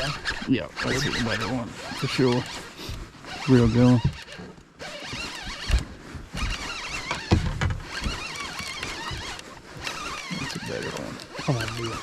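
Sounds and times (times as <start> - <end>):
fishing reel whirring: 0.0 - 12.0
dull knocks: 5.1 - 10.7.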